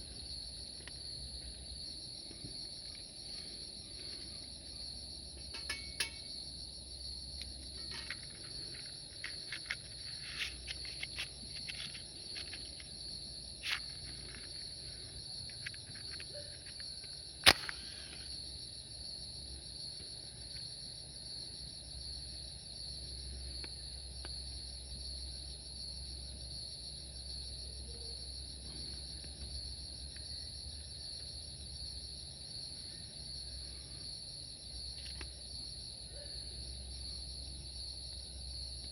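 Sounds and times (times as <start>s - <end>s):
insects buzzing: 0.0s - 38.9s
sharp loud click: 17.4s - 17.9s.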